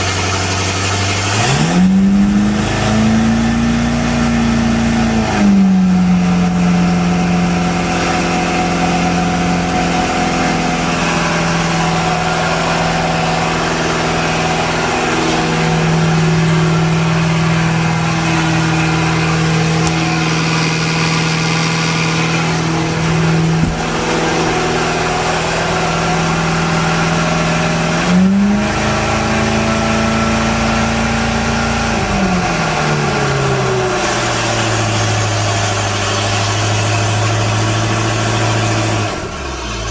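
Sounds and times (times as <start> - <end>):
boat engine idling: 0.0 - 1.4, 3.4 - 29.4.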